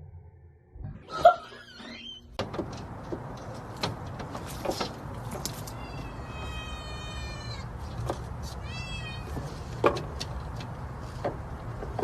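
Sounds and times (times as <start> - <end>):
cat meowing: 5.7 - 7.8, 8.5 - 9.4.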